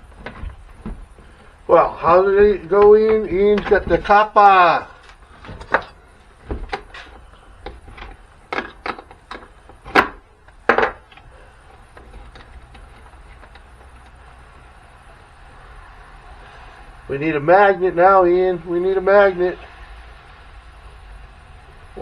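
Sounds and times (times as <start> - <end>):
faint steady hum: 0.0 - 22.0
hard parts knocking and clacking: 0.0 - 22.0.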